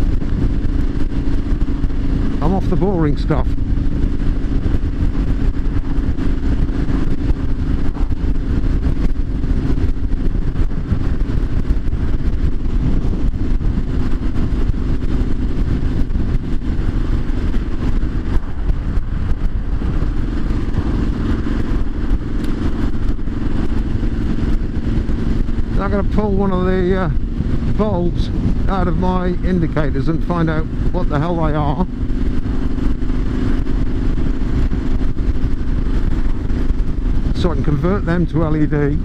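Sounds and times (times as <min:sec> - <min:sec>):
motorcycle engine running: 0:00.0 - 0:39.0
wind rush: 0:00.0 - 0:39.0.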